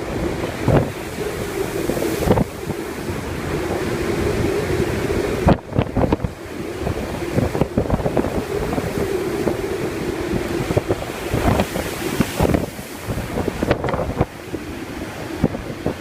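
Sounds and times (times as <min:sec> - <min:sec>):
waves breaking against seawall: 0:00.0 - 0:16.0
wind buffeting microphone: 0:00.0 - 0:16.0.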